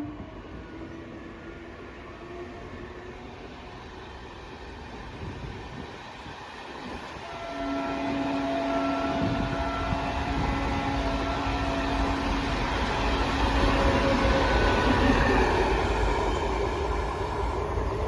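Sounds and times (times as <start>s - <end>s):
low rumble of train: 0.0s - 18.0s
train horn blast: 7.2s - 14.7s.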